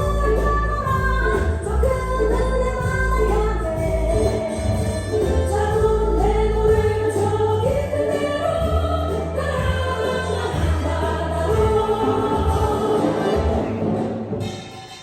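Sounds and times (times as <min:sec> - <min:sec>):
band backing with deep bass: 0:00.0 - 0:15.0
choir singing: 0:07.2 - 0:14.3.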